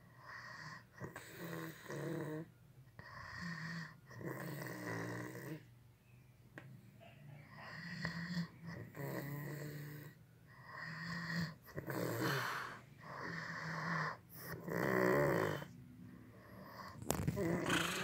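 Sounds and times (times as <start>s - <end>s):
person snoring: 7.7s - 15.8s, 16.4s - 18.0s.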